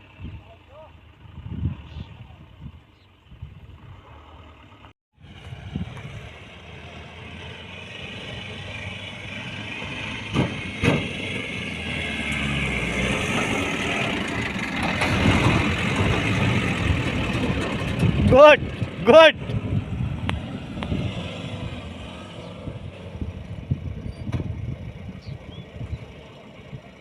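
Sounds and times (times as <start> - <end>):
diesel engine under load: 0.0 - 27.0.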